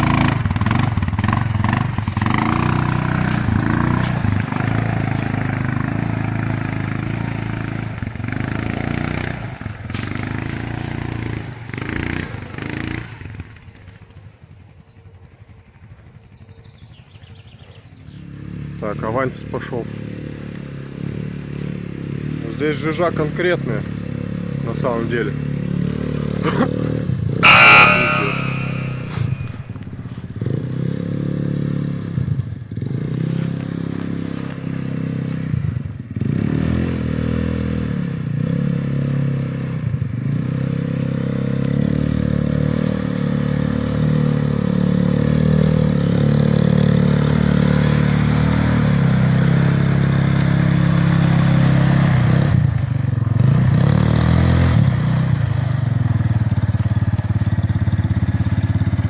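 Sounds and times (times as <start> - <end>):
quad bike engine revving: 0.0 - 14.0, 18.2 - 59.0
short loud scrape: 27.4 - 30.5.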